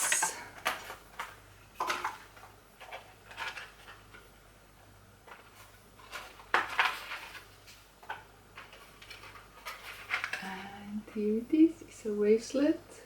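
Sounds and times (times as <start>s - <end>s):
package clicks and rustles: 0.0s - 4.4s, 5.2s - 10.5s.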